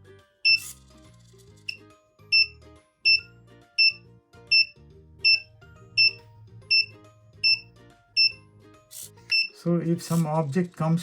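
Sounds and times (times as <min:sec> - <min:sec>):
quiet background music: 0:00.0 - 0:11.0
short high-pitched electronic beeps: 0:00.5 - 0:00.8, 0:01.7 - 0:02.5, 0:03.1 - 0:05.4, 0:06.0 - 0:07.6, 0:09.3 - 0:09.6.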